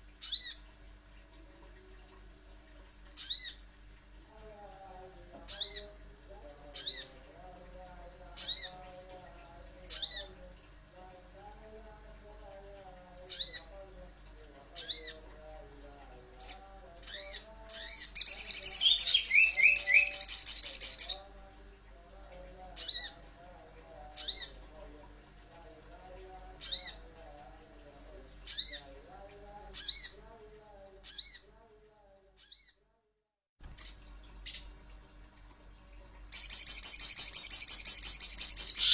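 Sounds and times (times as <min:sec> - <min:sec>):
rapid chattering bird trill: 0:16.4 - 0:21.2, 0:36.4 - 0:38.9.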